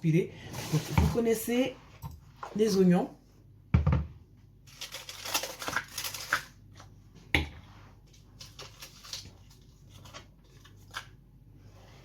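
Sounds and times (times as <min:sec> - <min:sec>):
crackling rustling handling noise: 0:04.6 - 0:07.0, 0:07.8 - 0:12.0.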